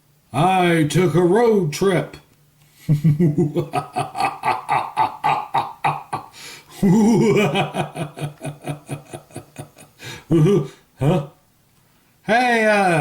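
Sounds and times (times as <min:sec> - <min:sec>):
man laughing maniacally: 0:02.9 - 0:11.3.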